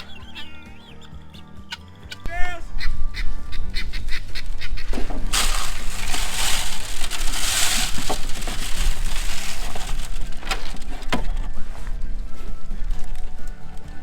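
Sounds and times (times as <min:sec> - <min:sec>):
farm fowl calling: 0:00.0 - 0:06.5.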